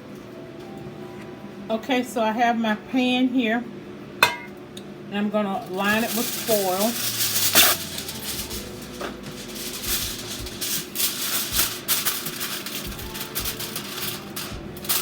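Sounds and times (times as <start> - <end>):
aluminium foil crinkling: 5.6 - 15.0.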